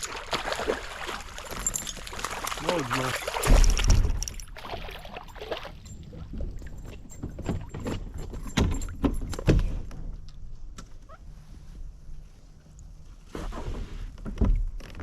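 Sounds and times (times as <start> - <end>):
light metallic jingling: 1.3 - 9.4.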